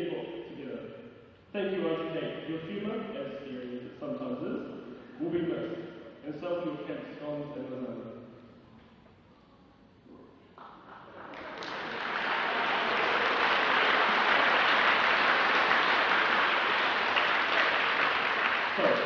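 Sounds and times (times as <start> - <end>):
large crowd applauding: 10.6 - 19.0.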